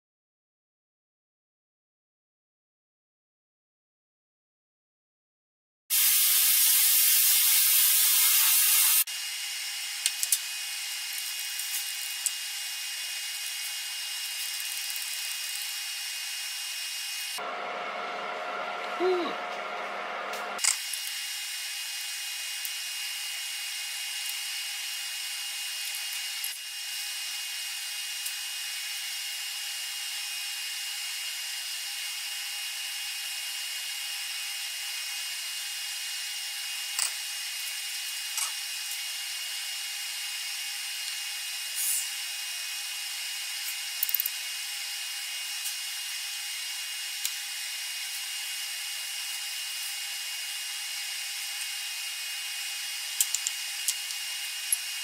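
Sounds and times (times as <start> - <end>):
power tool motor whining: 17.4 - 20.6.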